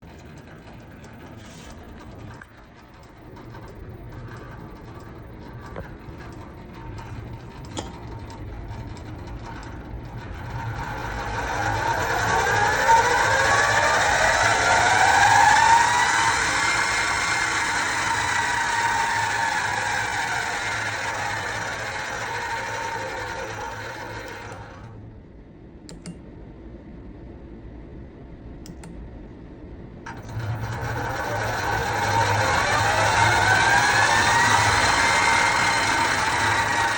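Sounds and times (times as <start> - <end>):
lathe humming and whining: 0.0 - 25.1, 30.1 - 36.9
light clicks: 25.9 - 26.2
light mechanical ticking: 25.9 - 26.2.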